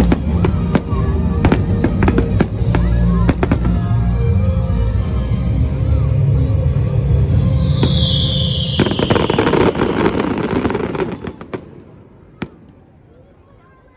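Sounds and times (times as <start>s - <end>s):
firework crackling: 0.0s - 3.9s, 7.3s - 13.0s
firework whistle falling: 7.4s - 12.6s
fireworks booming: 7.6s - 13.0s.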